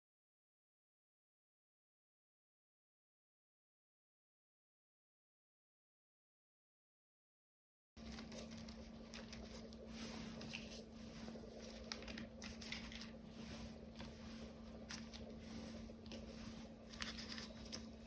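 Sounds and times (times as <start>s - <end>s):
faint steady hum: 8.0s - 18.0s
small scratching and clicking: 8.0s - 18.0s.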